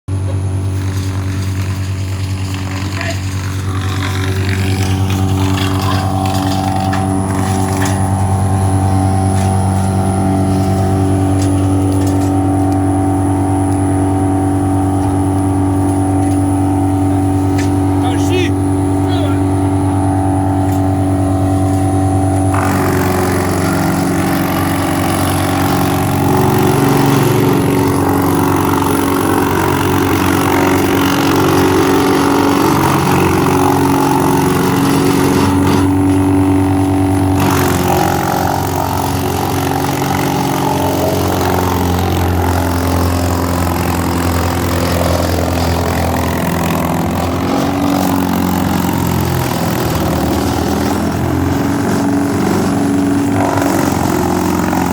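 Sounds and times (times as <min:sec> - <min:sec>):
wood chipper running: 0:00.1 - 0:54.9
branches being chipped: 0:21.6 - 0:54.9.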